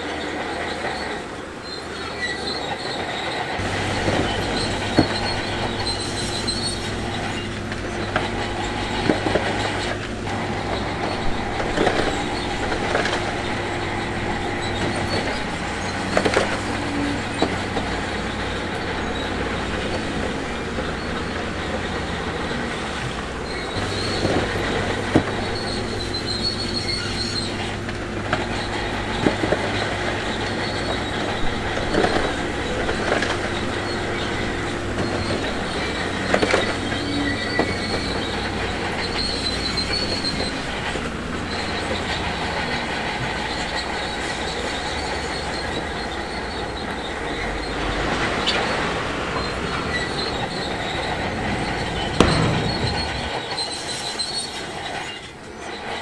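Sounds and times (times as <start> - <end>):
diesel engine running: 0.0 - 56.0
steel tracks squealing and clanking: 0.0 - 56.0
sharp knocks: 50.8 - 54.3.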